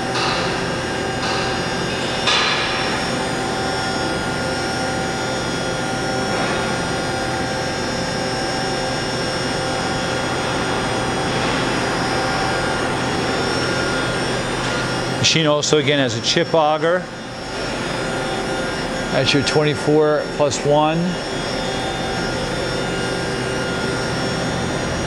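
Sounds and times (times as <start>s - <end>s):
machining center hum and whine: 0.0s - 25.0s.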